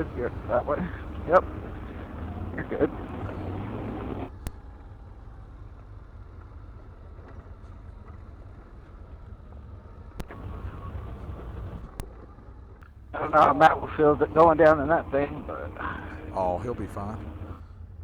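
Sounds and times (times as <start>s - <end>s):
atv engine running low: 0.0s - 4.9s, 10.2s - 12.3s, 13.2s - 17.6s.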